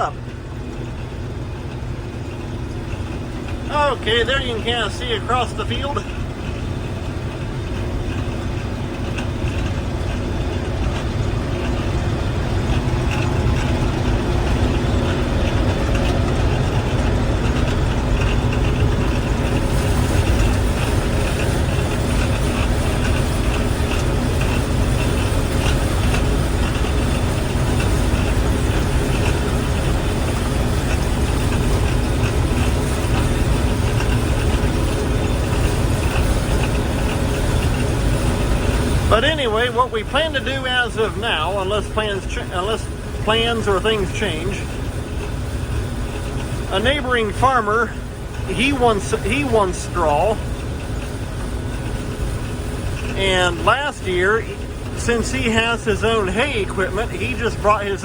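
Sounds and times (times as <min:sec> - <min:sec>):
combine harvester engine drone: 0:00.0 - 0:58.0.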